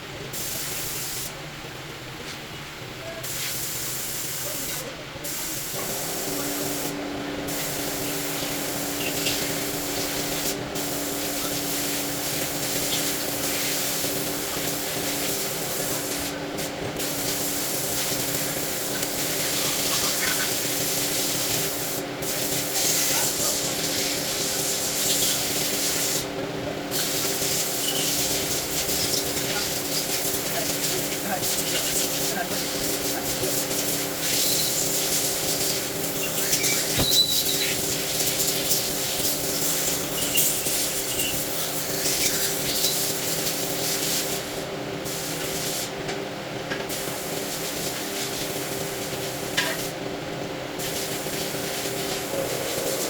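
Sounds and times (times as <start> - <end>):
spraying hiss: 0.3 - 1.3, 3.2 - 26.3
machine hum: 50.4 - 53.0.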